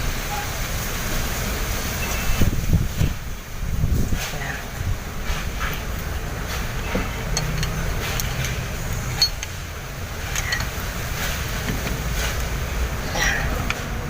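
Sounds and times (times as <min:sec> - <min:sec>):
metallic clicks of hand tools: 0:07.2 - 0:09.6, 0:10.3 - 0:10.8.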